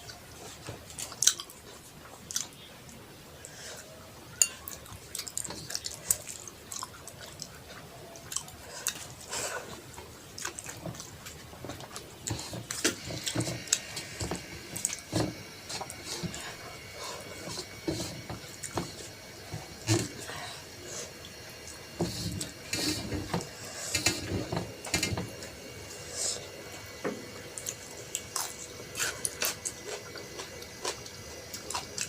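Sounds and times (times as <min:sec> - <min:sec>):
chewing and wet mouth smacks: 0:00.9 - 0:02.6.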